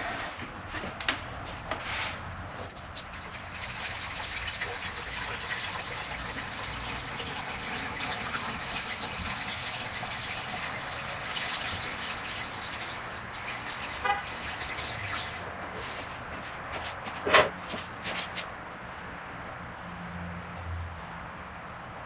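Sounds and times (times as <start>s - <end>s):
liquid pouring: 3.0s - 15.5s.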